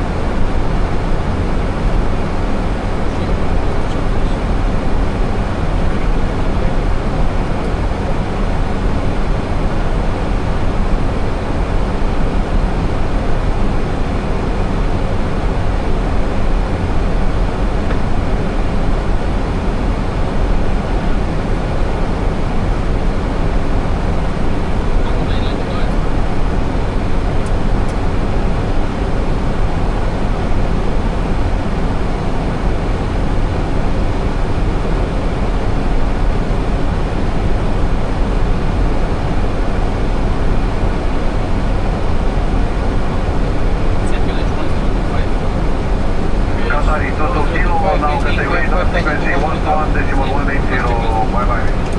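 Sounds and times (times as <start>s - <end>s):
cockpit airflow and engine noise: 0.0s - 51.9s.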